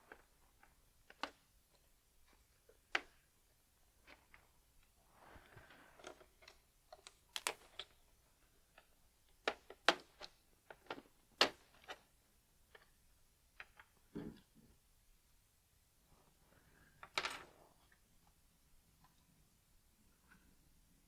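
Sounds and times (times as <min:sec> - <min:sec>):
soft rustle of laptop parts: 0:03.9 - 0:12.9.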